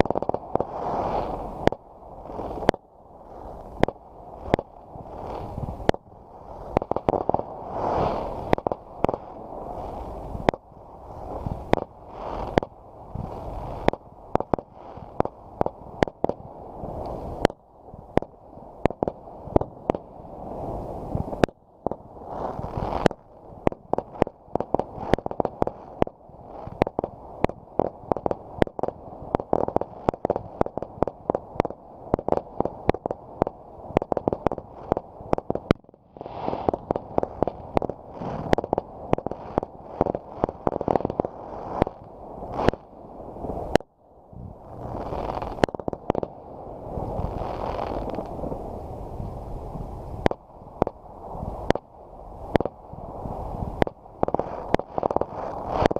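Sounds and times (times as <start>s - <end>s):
fireworks banging and popping: 0.0s - 2.8s, 3.6s - 10.6s, 11.3s - 20.1s, 21.2s - 42.8s, 43.7s - 43.9s, 44.8s - 46.4s, 47.1s - 48.4s, 50.2s - 51.0s, 52.5s - 52.8s, 53.7s - 55.9s
low rumble: 36.3s - 51.7s.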